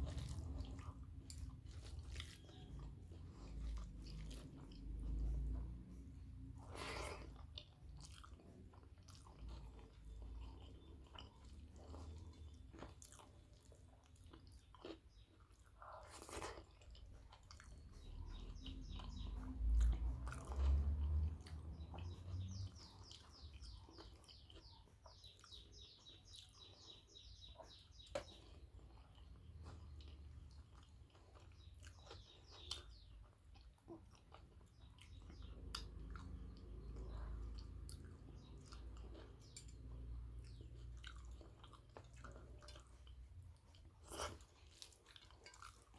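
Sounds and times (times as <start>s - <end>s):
chewing with wet mouth clicks: 0.0s - 45.9s.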